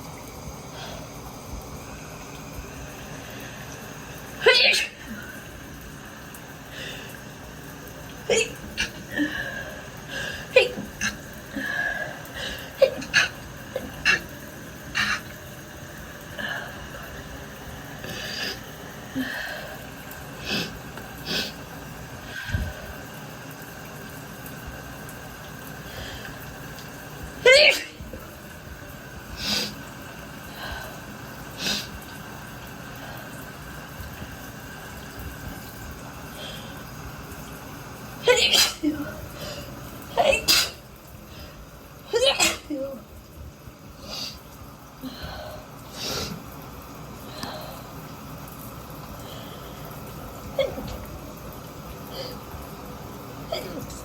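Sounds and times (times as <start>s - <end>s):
shower water running: 0.0s - 54.0s
woman sneezing: 27.5s - 28.0s, 38.3s - 39.2s, 40.2s - 40.8s, 42.2s - 43.0s, 53.5s - 53.9s.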